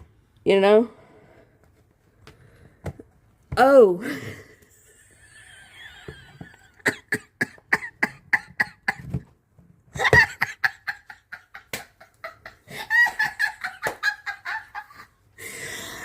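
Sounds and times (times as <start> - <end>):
woman laughing hard: 10.0 - 15.2.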